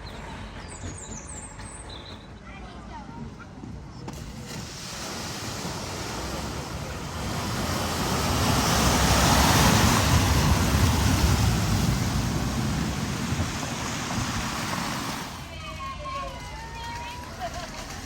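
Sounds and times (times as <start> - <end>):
car low rumble: 3.6 - 15.7
water splashing around car: 4.1 - 15.6.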